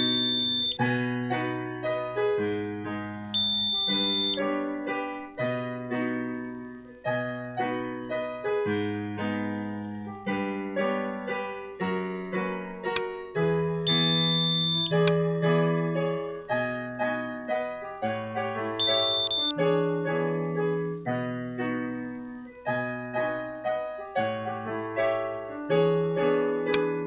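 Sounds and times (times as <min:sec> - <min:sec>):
smoke alarm beep: 0:00.0 - 0:00.8, 0:03.1 - 0:04.4, 0:13.8 - 0:15.2, 0:18.7 - 0:19.6
solo piano music: 0:00.0 - 0:27.0.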